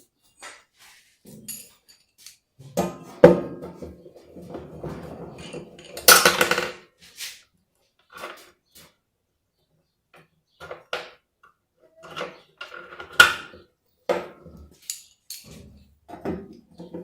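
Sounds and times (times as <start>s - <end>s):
metal clanks and scraping: 1.2s - 6.8s, 14.2s - 17.0s.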